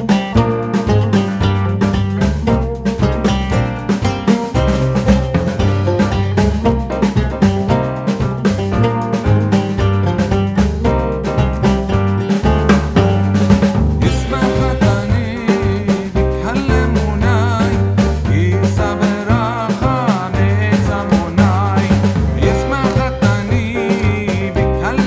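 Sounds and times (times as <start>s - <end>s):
song with vocals bass and drums: 0.0s - 25.0s.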